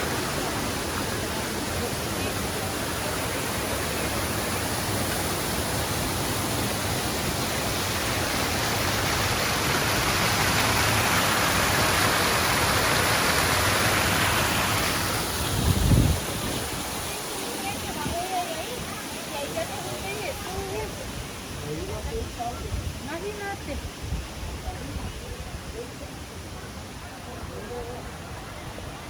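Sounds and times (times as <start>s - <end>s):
flood torrent roaring: 0.0s - 29.0s.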